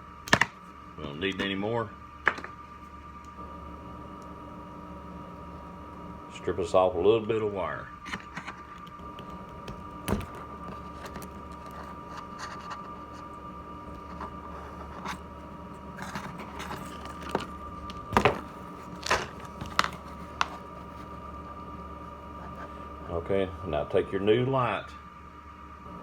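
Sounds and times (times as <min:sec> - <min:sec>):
faint steady hum: 0:00.0 - 0:26.0
wire strippers clicking and scraping: 0:08.1 - 0:15.2.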